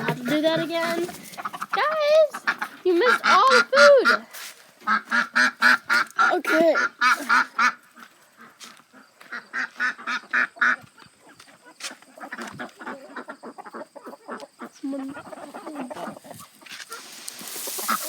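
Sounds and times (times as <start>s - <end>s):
poultry calling: 0.0s - 18.0s
steady hiss: 16.6s - 18.0s.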